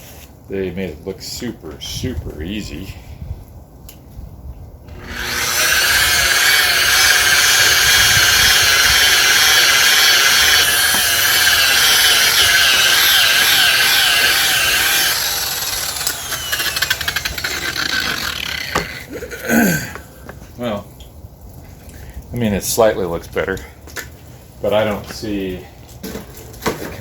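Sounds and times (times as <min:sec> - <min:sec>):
electric polisher motor: 0:04.9 - 0:19.1.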